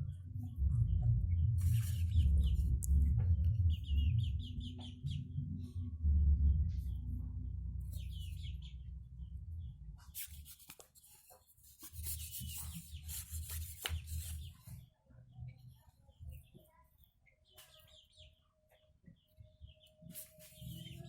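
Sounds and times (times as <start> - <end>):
low rumble: 0.0 - 10.1
birds chirping: 0.2 - 5.6, 7.8 - 9.8, 12.4 - 21.0
scraping and rubbing on bamboo: 10.1 - 14.6.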